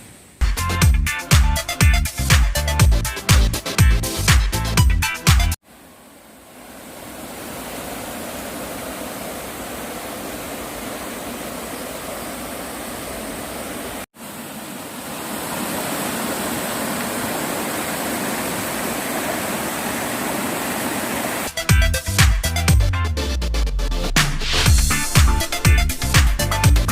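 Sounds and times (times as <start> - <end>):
stream water rushing: 5.7 - 21.6.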